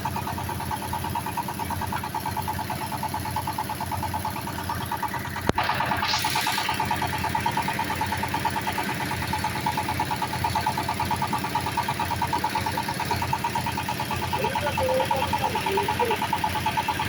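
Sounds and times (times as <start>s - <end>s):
drilling machine engine throbbing: 0.0s - 17.0s.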